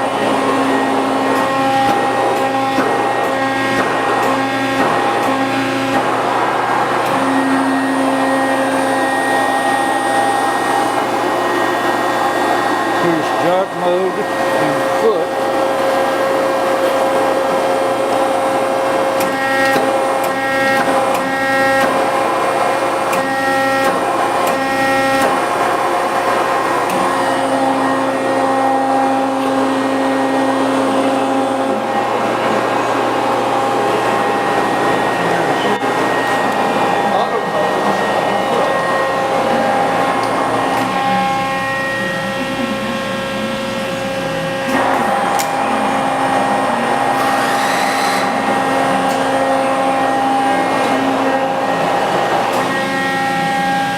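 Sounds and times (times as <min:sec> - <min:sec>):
hydraulic pump hum and whine: 0:00.0 - 0:53.9
low tone: 0:26.9 - 0:47.1.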